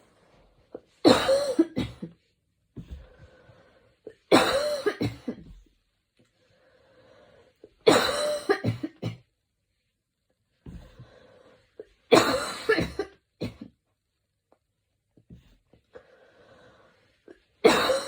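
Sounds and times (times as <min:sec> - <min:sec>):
woman coughing: 0:01.0 - 0:02.2, 0:04.3 - 0:05.6, 0:07.9 - 0:09.2, 0:12.1 - 0:13.7, 0:17.6 - 0:18.0
breathing: 0:02.8 - 0:04.1, 0:06.3 - 0:07.8, 0:10.7 - 0:12.0, 0:15.4 - 0:17.3.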